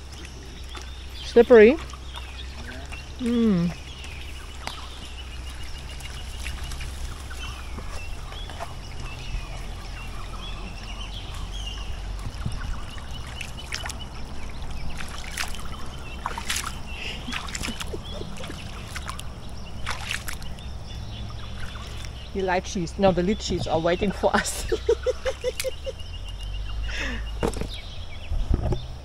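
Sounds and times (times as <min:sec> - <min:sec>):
water splashing and trickling: 0:00.0 - 0:29.0
faint bird calls: 0:00.1 - 0:22.4.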